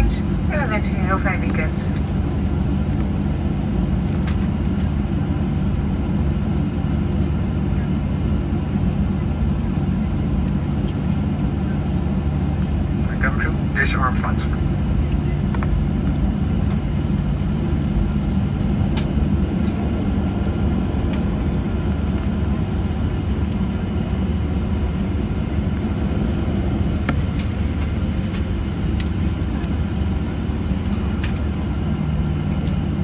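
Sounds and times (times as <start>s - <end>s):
airplane cabin engine rumble: 0.0s - 33.0s.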